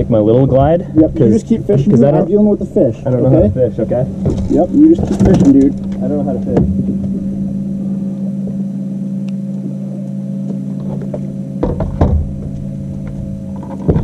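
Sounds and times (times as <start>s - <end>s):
boat motor humming: 0.0s - 14.0s
low rumble: 0.0s - 14.0s
thumps on a boat: 4.2s - 7.3s, 10.8s - 14.0s.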